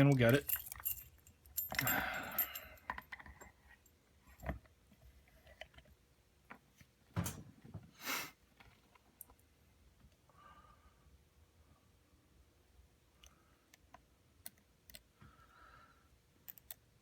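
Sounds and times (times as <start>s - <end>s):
lock-picking tools rattling in padlock: 0.0s - 3.9s
soft thump: 7.2s - 7.9s.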